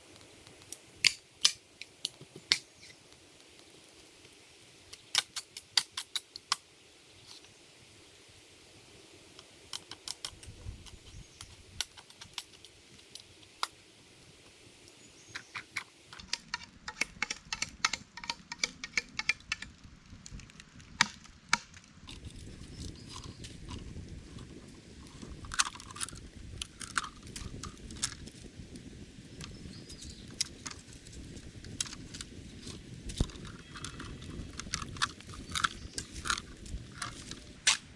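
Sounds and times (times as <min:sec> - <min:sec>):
low rumbling noise: 0:21.9 - 0:37.9.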